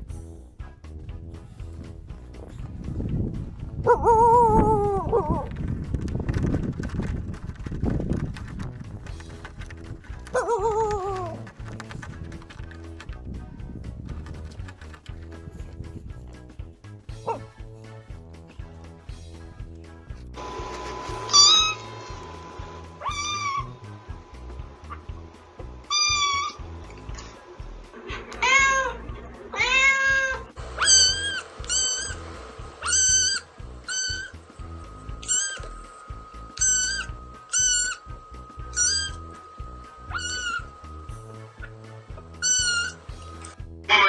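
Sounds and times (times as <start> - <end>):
background music: 0.0 - 44.0
cats meowing: 10.3 - 12.4, 28.1 - 32.2, 32.8 - 34.3, 35.2 - 35.8, 36.6 - 38.0, 38.8 - 39.2, 40.0 - 40.9, 42.4 - 43.0.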